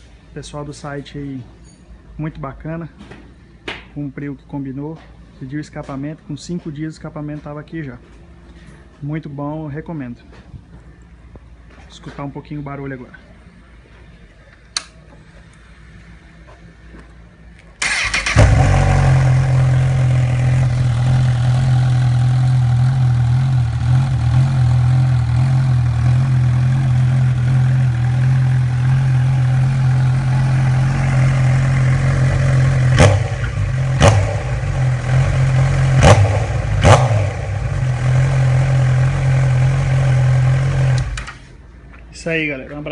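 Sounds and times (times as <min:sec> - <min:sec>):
engine cranking: 0:17.8 - 0:18.9
motorcycle engine idling: 0:17.8 - 0:41.0.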